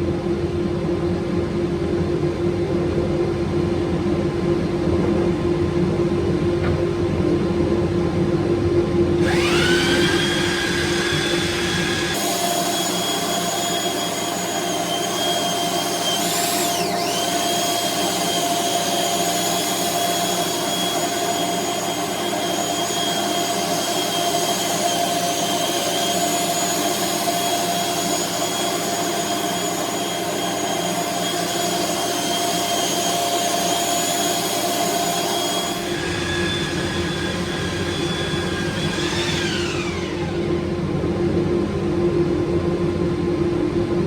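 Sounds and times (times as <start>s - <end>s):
belt sander on wood: 9.2s - 40.8s.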